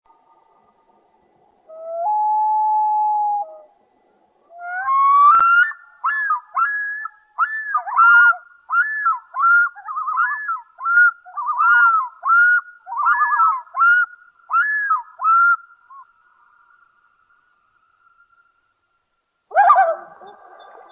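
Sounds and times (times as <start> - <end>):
loon calling: 1.7 - 3.7, 4.5 - 16.4.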